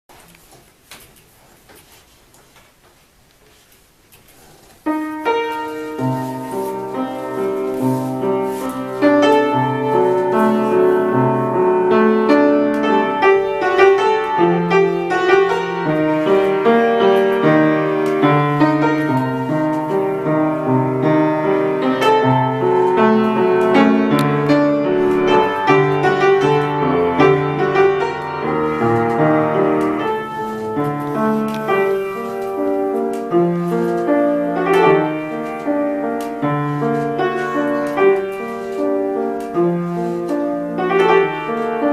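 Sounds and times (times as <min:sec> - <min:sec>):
piano playing: 0:04.8 - 0:41.9.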